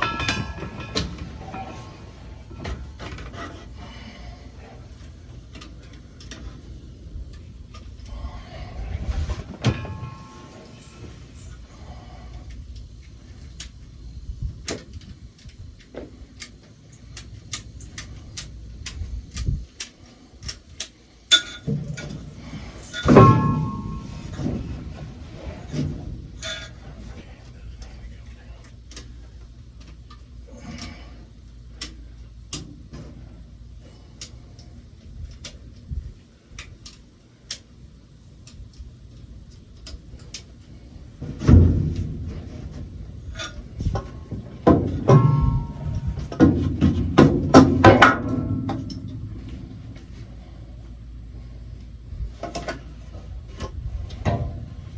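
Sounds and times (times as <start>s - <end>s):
metal tools clicking and clinking: 0.0s - 2.8s
heavy thud: 9.0s - 10.6s.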